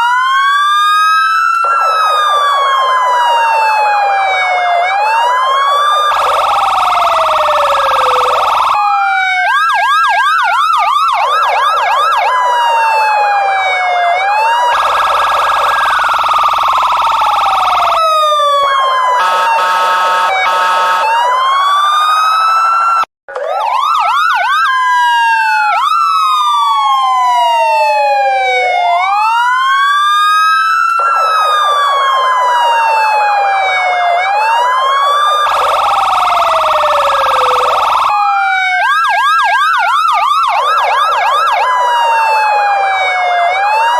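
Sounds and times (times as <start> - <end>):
police siren wailing and yelping: 0.0 - 43.9
steady siren horn tone: 1.6 - 9.4, 11.3 - 23.5, 27.8 - 38.9.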